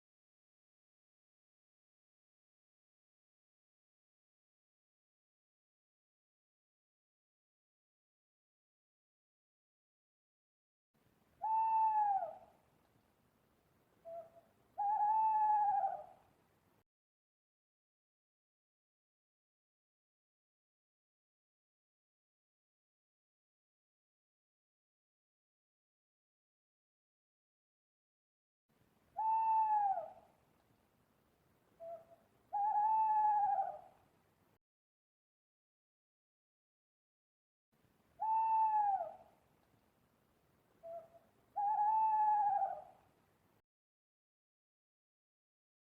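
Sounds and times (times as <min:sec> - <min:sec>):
owl hooting: 0:11.4 - 0:12.6, 0:14.0 - 0:16.2, 0:29.2 - 0:30.3, 0:31.8 - 0:34.0, 0:38.2 - 0:39.4, 0:40.8 - 0:43.1.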